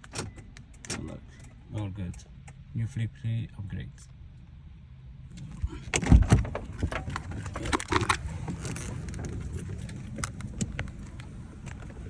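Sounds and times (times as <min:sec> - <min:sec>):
steady low rumble: 0:00.4 - 0:12.0
keys jangling: 0:07.2 - 0:10.5.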